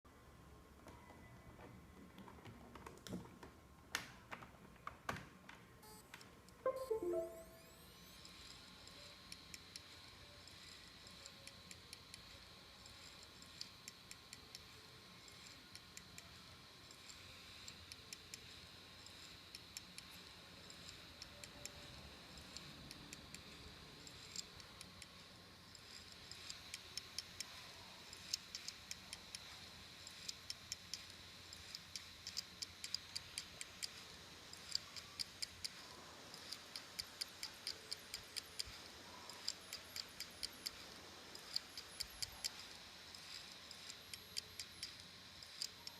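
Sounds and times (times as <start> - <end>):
faint high whine: 5.8 - 9.2.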